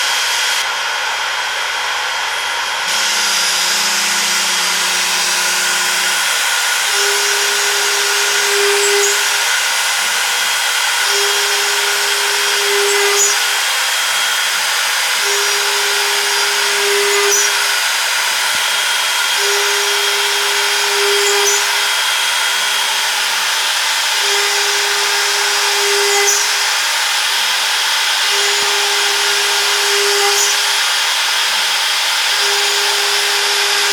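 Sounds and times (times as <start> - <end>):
cnc router spindle whine: 0.0 - 33.9
low machine hum: 0.8 - 9.4.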